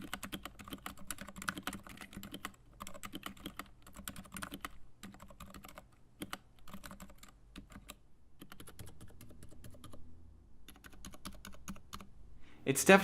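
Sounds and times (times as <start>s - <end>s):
quiet mechanical keyboard typing: 0.0s - 12.1s.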